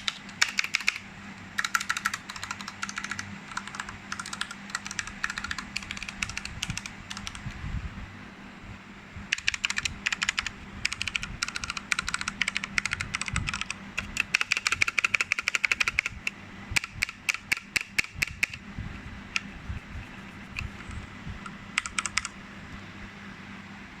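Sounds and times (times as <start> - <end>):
typing on mechanical keyboard: 0.0 - 7.6, 9.3 - 18.6, 21.8 - 22.4.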